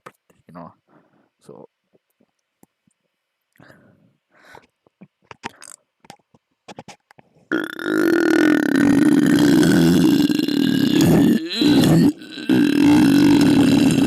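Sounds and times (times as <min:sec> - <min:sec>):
man burping loudly: 0:07.5 - 0:14.0.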